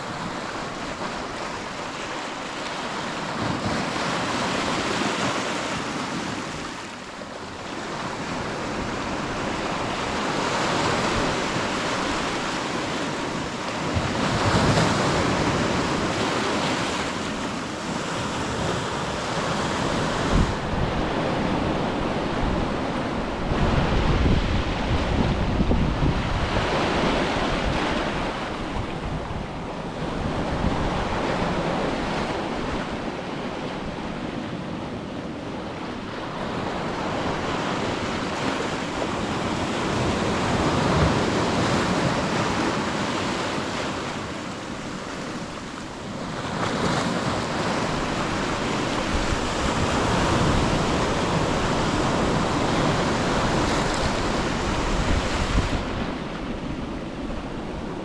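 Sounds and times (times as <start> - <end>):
ocean surf breaking on beach: 0.0 - 58.0
wind buffeting microphone: 17.8 - 34.4, 46.8 - 58.0.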